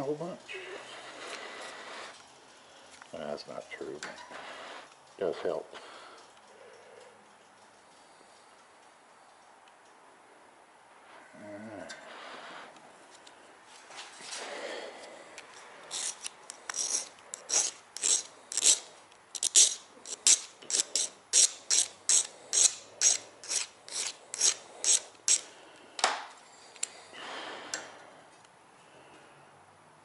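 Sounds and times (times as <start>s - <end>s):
abrasive tool strokes on metal: 15.9s - 25.6s.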